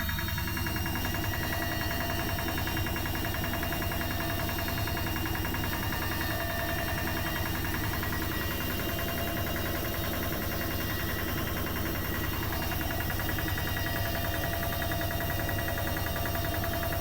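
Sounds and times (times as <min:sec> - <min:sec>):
washing machine motor rattling: 0:00.0 - 0:17.0.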